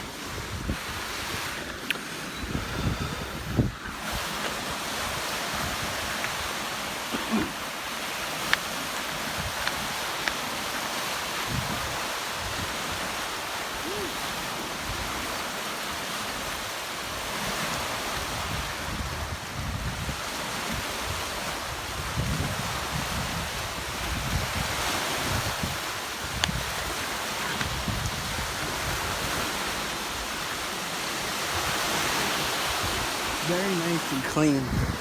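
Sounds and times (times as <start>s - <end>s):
wind buffeting microphone: 0.0s - 1.6s, 2.4s - 6.5s, 11.5s - 13.0s, 18.2s - 29.7s, 34.6s - 35.0s
ocean waves and surf: 0.0s - 35.0s.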